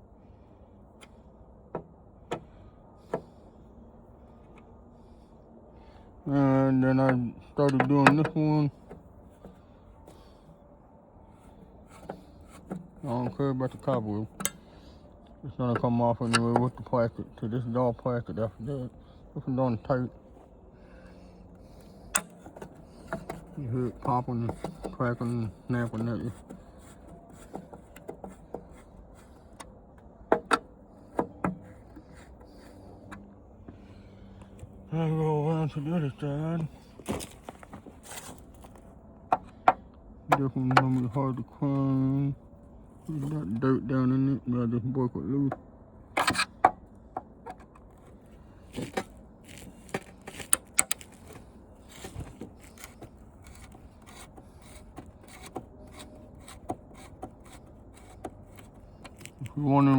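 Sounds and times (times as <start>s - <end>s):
screwdriver clicking and scraping: 15.8s - 16.9s, 21.7s - 29.7s, 46.2s - 46.6s, 48.8s - 59.6s.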